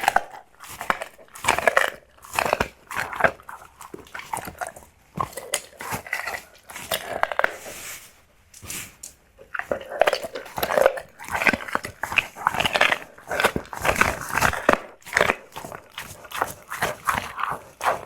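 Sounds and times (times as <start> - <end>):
dog eating: 0.0 - 7.9, 9.4 - 18.0.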